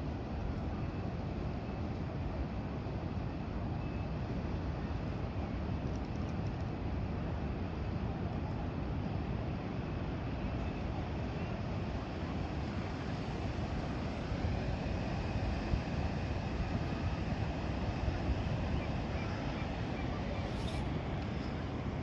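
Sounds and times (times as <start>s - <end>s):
wind: 0.0s - 22.0s
ocean surf rumble: 6.7s - 22.0s.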